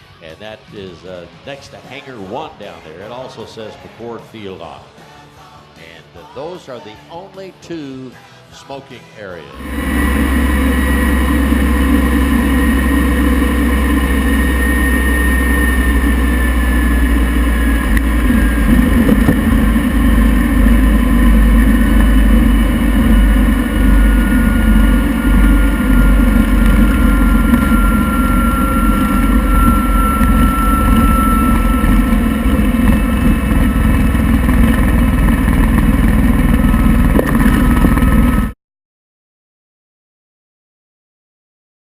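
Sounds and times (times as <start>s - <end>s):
jet engine running: 9.6s - 38.6s.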